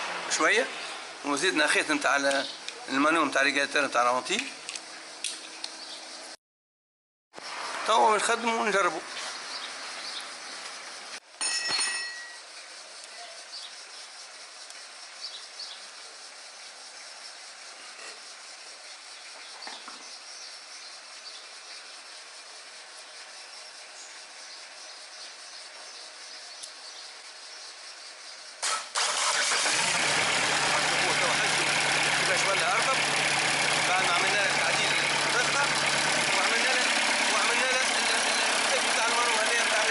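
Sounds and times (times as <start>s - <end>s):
metallic clink: 11.4s - 12.5s.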